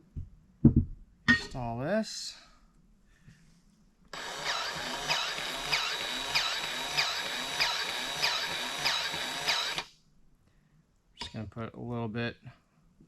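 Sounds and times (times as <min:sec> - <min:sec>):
small electric power tool running: 0:04.1 - 0:09.9.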